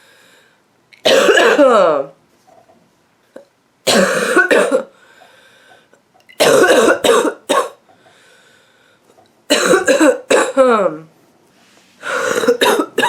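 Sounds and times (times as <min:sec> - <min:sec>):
woman's barking cough: 0:01.1 - 0:02.0, 0:03.9 - 0:04.9, 0:06.4 - 0:07.8, 0:09.5 - 0:10.8, 0:12.1 - 0:13.0.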